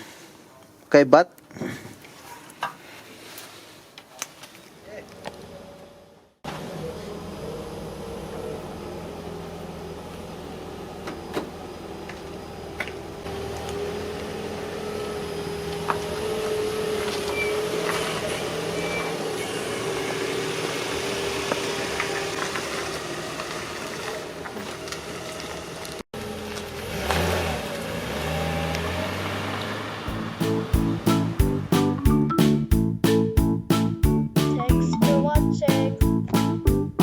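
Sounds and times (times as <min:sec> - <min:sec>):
car engine and road hum: 0:06.4 - 0:31.8.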